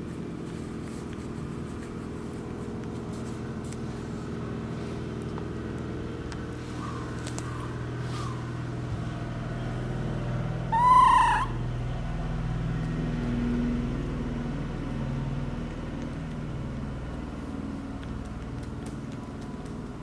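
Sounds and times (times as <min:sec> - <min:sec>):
steady low hum: 0:00.0 - 0:20.0
small animal high-pitched cry: 0:10.7 - 0:11.6.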